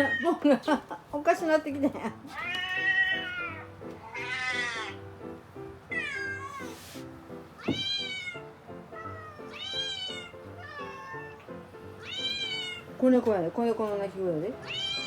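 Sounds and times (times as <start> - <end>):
recorded kitten meows: 0.0 - 0.4, 2.3 - 5.0, 5.9 - 6.8, 7.6 - 8.4, 9.0 - 11.4, 12.0 - 12.9, 14.6 - 15.0
brief hissing noise: 6.6 - 7.1.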